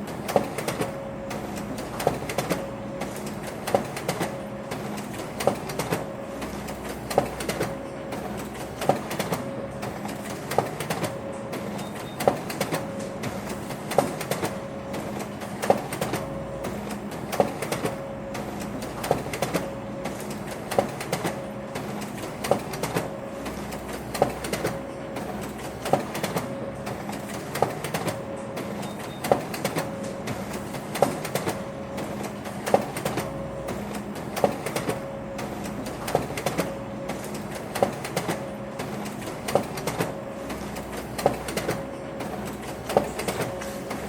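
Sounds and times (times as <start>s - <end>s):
printer clicking: 0.0s - 44.0s
printer whirring: 0.0s - 44.0s.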